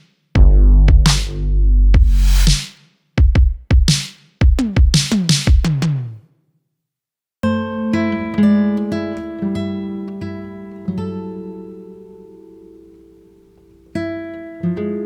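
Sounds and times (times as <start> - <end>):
acoustic guitar music: 7.4 - 15.0.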